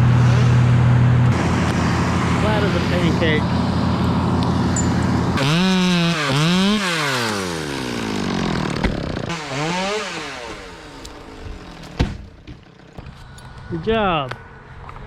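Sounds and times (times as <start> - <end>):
chainsaw revving: 1.3 - 13.0.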